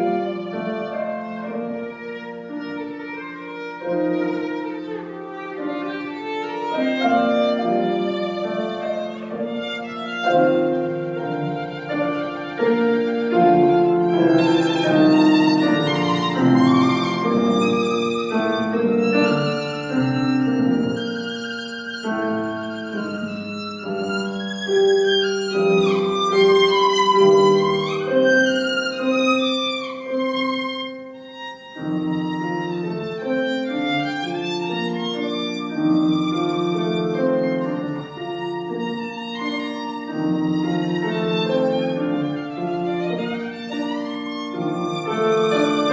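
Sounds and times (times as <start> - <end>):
violin playing classical piece: 0.0 - 45.9.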